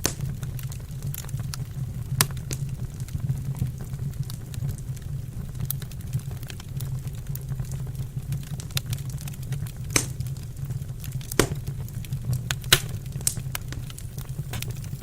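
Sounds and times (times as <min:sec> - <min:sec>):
low rumble of flames: 0:00.0 - 0:15.0
wood fire crackling: 0:00.0 - 0:15.0.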